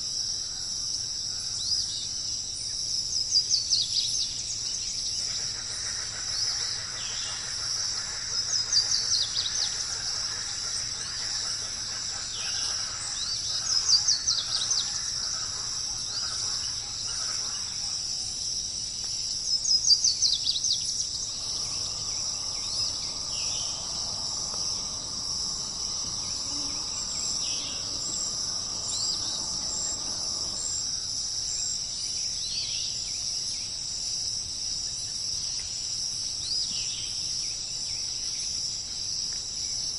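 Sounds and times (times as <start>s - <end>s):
insect drone: 0.0s - 39.9s
birds calling: 5.2s - 18.2s, 19.6s - 31.6s.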